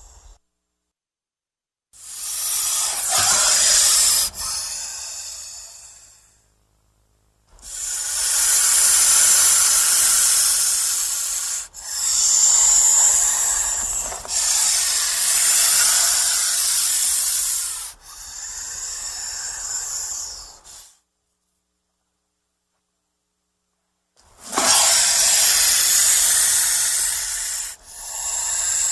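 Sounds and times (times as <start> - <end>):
snake hissing: 2.0 - 6.4, 7.5 - 21.0, 24.4 - 28.9.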